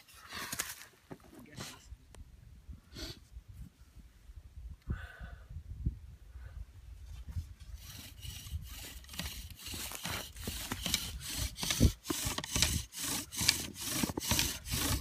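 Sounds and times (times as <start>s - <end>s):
bow drill rhythmic rasping: 7.8s - 15.0s.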